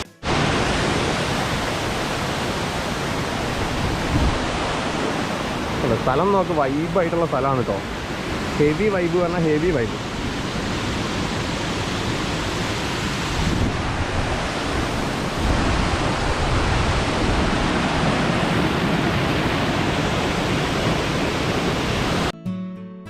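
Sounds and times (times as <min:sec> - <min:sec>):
waterfall rushing: 0:00.0 - 0:22.3
strummed acoustic guitar music: 0:22.4 - 0:23.0.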